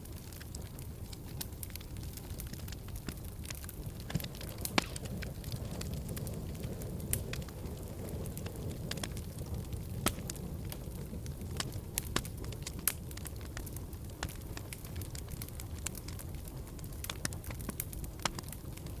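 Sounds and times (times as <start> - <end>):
fire crackling and popping: 0.0 - 19.0.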